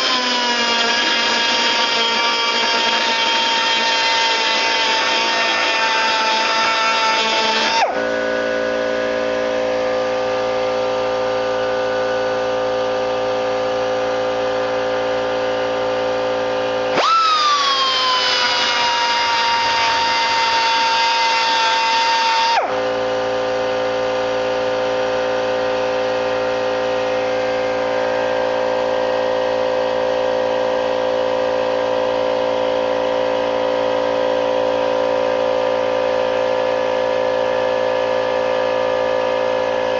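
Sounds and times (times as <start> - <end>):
pneumatic die grinder whining: 0.0 - 10.5, 16.6 - 29.3
steady machine hum: 0.0 - 39.9.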